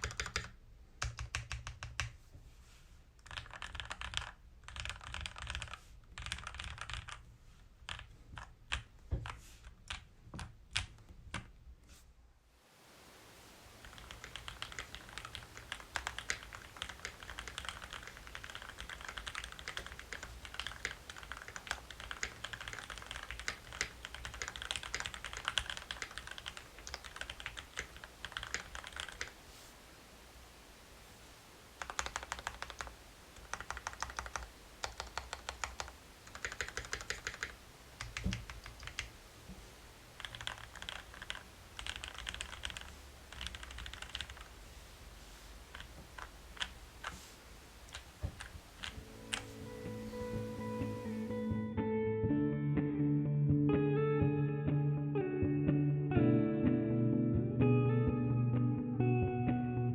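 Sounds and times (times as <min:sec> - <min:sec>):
mechanical keyboard typing: 0:00.0 - 0:02.1, 0:03.2 - 0:07.2, 0:07.9 - 0:11.5, 0:13.8 - 0:29.4, 0:31.8 - 0:39.1, 0:40.2 - 0:44.5.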